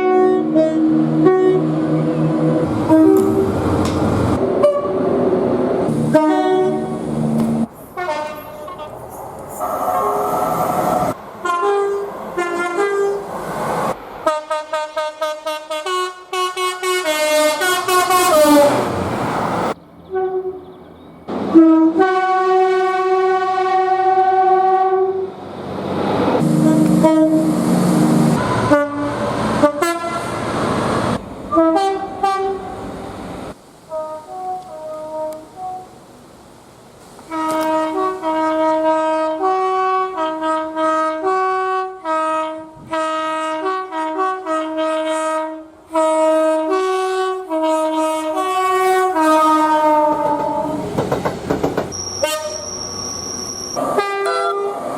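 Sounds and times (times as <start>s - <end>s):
train horn blasts: 0.0s - 3.7s, 4.4s - 9.1s, 11.4s - 13.2s, 14.2s - 18.9s, 20.1s - 20.7s, 21.5s - 25.3s, 26.4s - 30.5s, 31.5s - 33.0s, 33.9s - 36.0s, 37.2s - 50.8s, 51.9s - 54.9s
train rumbling: 0.0s - 41.3s, 47.5s - 54.9s.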